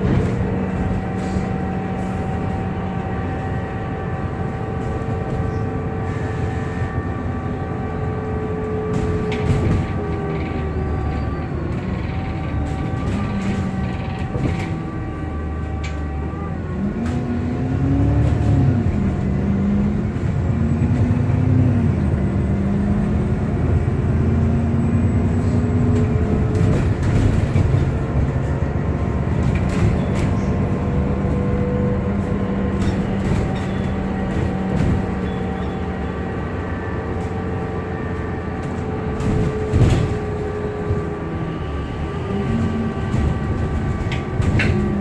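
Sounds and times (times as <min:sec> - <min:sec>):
bus body rattles and knocks: 0:00.0 - 0:45.0
bus engine: 0:00.0 - 0:45.0
constant whirring whine: 0:24.7 - 0:45.0.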